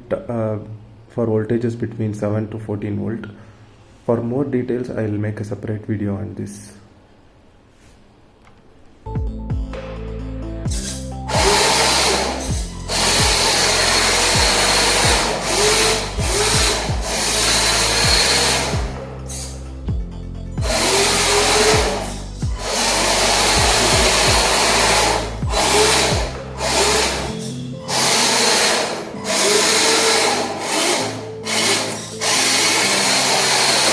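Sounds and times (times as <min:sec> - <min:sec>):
background music: 0:09.1 - 0:33.9
electric motor whirring: 0:10.7 - 0:19.8, 0:20.6 - 0:33.9.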